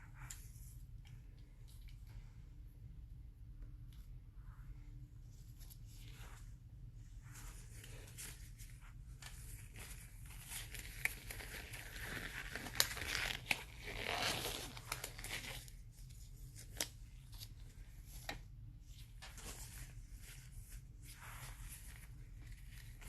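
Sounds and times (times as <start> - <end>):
packaging tearing and crinkling: 10.7 - 15.6.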